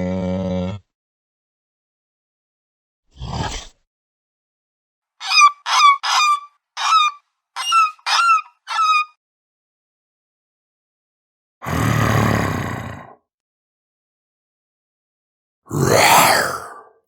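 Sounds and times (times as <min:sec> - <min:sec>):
bird honking: 0:05.2 - 0:09.2.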